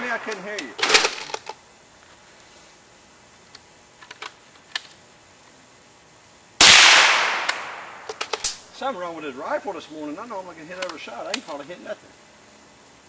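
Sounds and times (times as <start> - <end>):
rifle shot ringing: 6.6 - 8.2.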